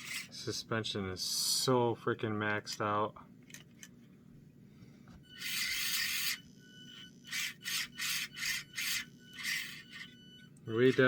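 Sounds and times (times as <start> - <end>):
toy car drivetrain whirring: 0.0 - 0.3, 5.4 - 10.1.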